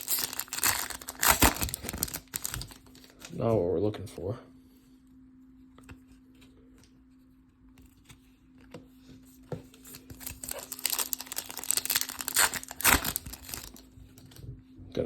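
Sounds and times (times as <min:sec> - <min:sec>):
foil wrapper tearing and crinkling: 0:00.0 - 0:03.3, 0:09.9 - 0:14.3.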